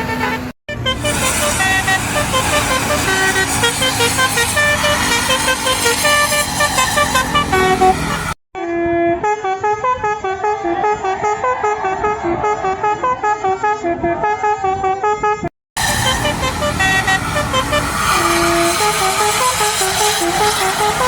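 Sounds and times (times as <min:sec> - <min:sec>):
bus horn playing a melody: 0:00.0 - 0:21.0.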